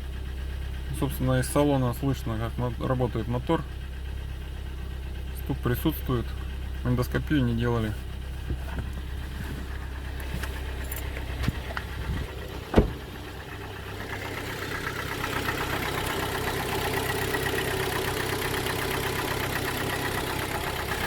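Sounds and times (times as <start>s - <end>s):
car engine idling with knock: 0.0s - 21.0s
sharp thump: 12.7s - 13.1s.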